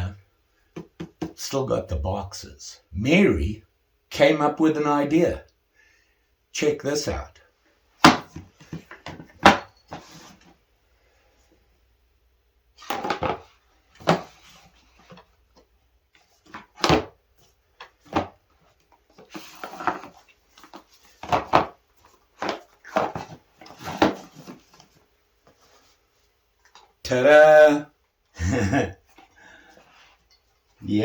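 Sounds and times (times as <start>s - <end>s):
objects knocking and clicking: 17.8s - 24.8s.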